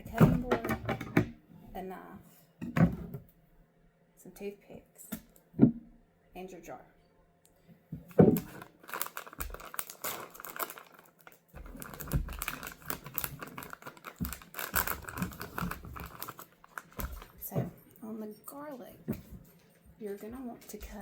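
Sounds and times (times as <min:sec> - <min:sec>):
rustling and crinkling: 0:08.0 - 0:21.0.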